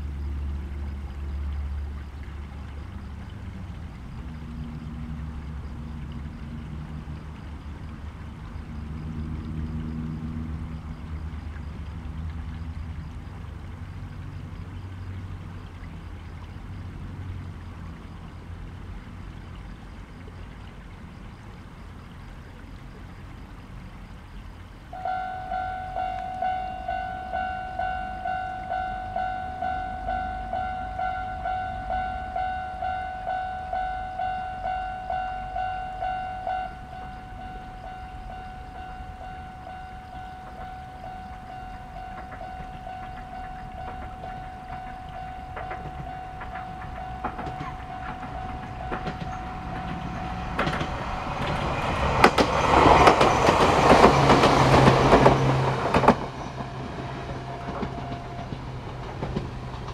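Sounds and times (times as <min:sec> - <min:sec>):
low rumble: 0:24.9 - 0:59.9
ringing warning signal tone: 0:25.0 - 0:51.9, 0:56.0 - 0:58.7.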